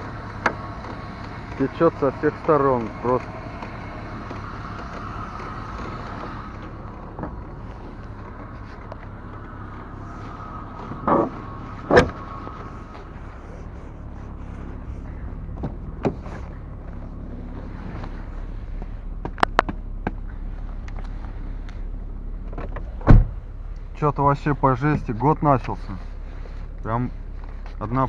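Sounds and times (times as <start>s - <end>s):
car engine running: 0.0s - 28.0s.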